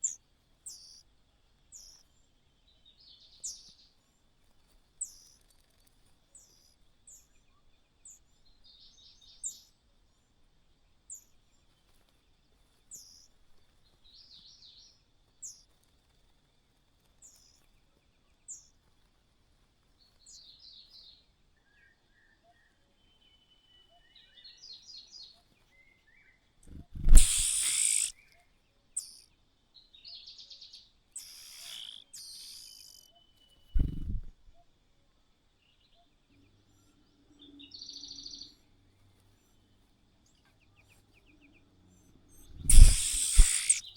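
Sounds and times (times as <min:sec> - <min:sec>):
small birds chirping: 0:00.0 - 0:10.3, 0:11.0 - 0:16.4, 0:17.0 - 0:19.0, 0:20.0 - 0:28.3, 0:28.9 - 0:34.6, 0:35.6 - 0:43.9
harsh buzzy bird calls: 0:26.7 - 0:28.1, 0:29.0 - 0:29.2, 0:31.2 - 0:33.1, 0:33.8 - 0:34.4, 0:42.4 - 0:43.9
rattling bird trills: 0:26.7 - 0:28.1, 0:42.5 - 0:43.8.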